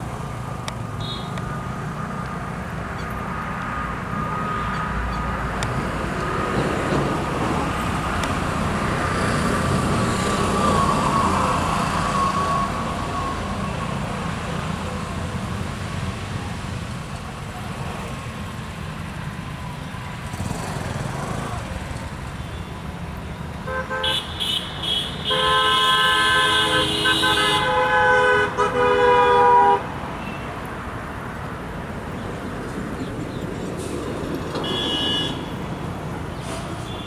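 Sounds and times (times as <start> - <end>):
low traffic rumble: 0.0 - 37.0
vehicle passing by: 1.4 - 18.8, 19.6 - 22.4.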